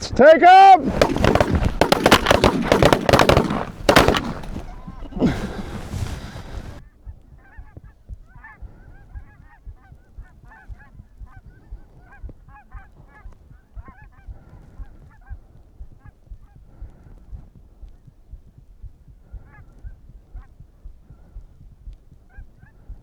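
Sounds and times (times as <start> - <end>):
shotgun volley: 0.8 - 6.8.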